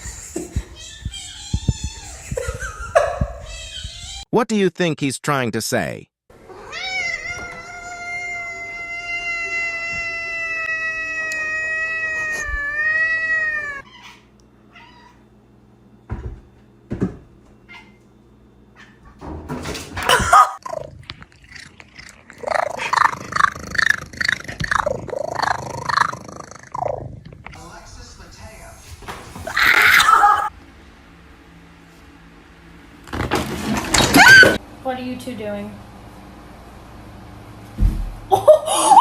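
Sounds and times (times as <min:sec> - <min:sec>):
cat yowling: 0:06.5 - 0:15.2, 0:29.5 - 0:30.5.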